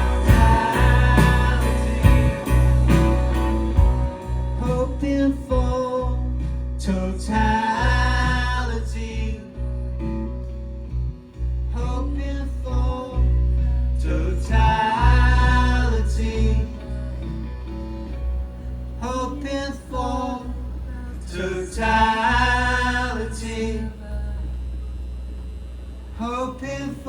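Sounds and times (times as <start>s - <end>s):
drum kit with cymbal strikes: 0.0s - 8.5s
deep bass: 0.0s - 26.4s
guitar: 0.0s - 27.0s.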